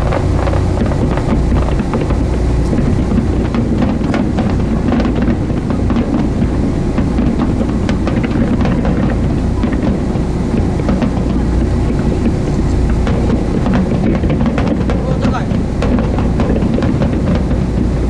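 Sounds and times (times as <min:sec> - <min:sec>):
boat engine running: 0:00.0 - 0:18.0.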